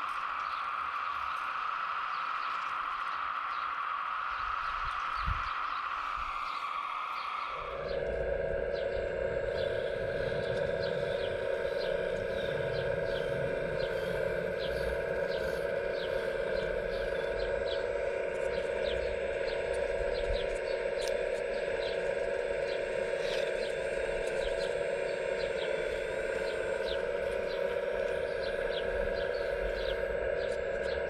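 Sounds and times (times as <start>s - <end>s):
hydraulic pump whine: 0.0s - 31.0s.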